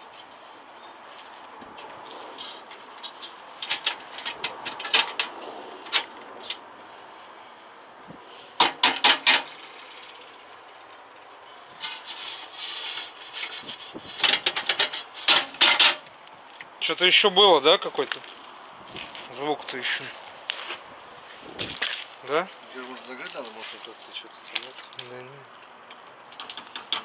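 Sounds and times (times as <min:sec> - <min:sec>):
scraping rub: 0:11.8 - 0:15.4.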